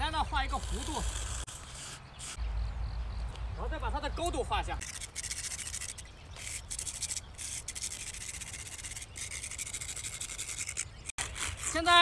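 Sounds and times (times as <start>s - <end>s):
tool scratching on rough road: 0.0s - 2.6s, 4.2s - 12.0s.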